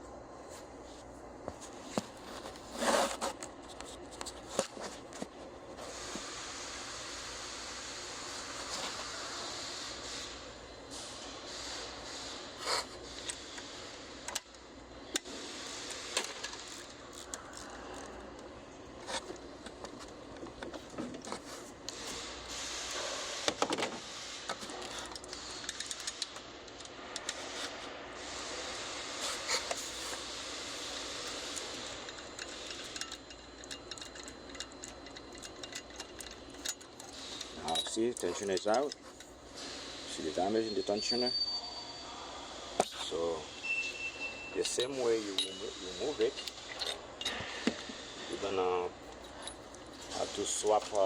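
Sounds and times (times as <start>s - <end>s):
ratchet clicking: 30.9s - 39.0s
hand tools clicking and clinking: 31.2s - 39.4s, 44.6s - 47.6s, 49.1s - 51.0s.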